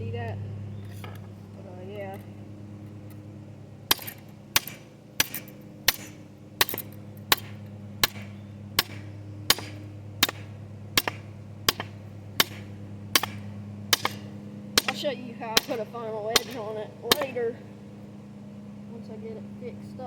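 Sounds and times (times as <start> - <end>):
steady low hum: 0.0 - 20.0
hammer striking hot metal: 3.9 - 17.4.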